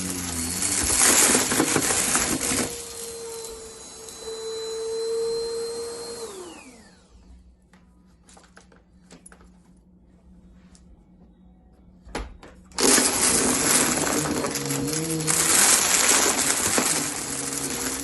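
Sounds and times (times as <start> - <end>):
vacuum motor winding down: 0.0 - 7.3, 12.8 - 18.0
vacuum cleaner running: 0.0 - 7.6, 12.7 - 18.0.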